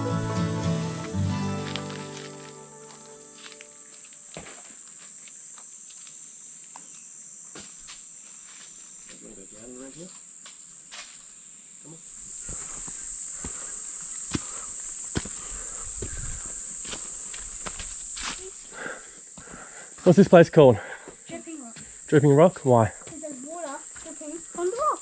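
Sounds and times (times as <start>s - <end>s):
high-pitched insect drone: 0.0s - 7.5s, 11.8s - 25.0s
footsteps on walking track: 1.0s - 6.2s, 12.4s - 18.5s, 19.3s - 25.0s.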